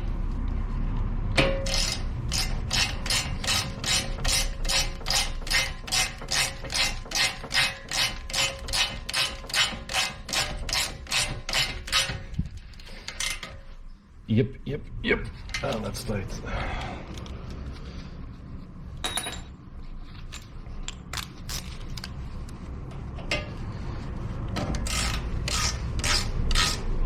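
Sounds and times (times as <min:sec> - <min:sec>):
hand ratchet clicking: 0:01.4 - 0:12.2, 0:24.6 - 0:26.9.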